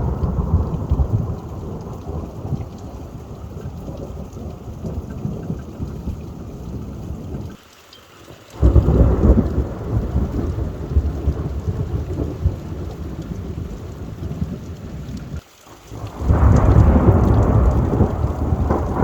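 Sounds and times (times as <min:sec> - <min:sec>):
rolling thunder: 0:00.0 - 0:07.5, 0:08.6 - 0:19.0
rain: 0:00.0 - 0:19.0.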